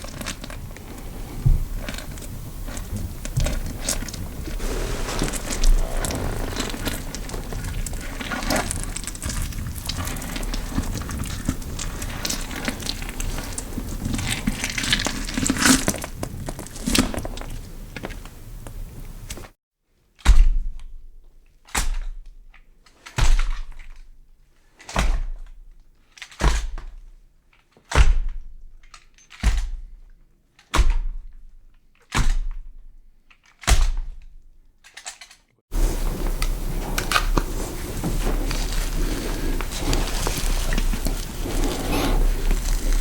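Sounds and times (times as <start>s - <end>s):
steady hiss: 0.0s - 19.5s, 35.7s - 43.0s
heavy booming thuds: 35.7s - 43.0s.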